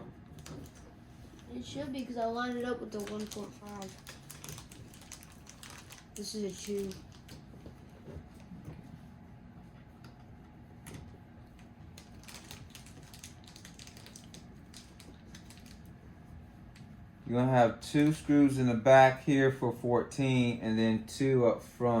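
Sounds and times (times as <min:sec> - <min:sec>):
plastic parts clicking and rattling: 0:02.9 - 0:07.3.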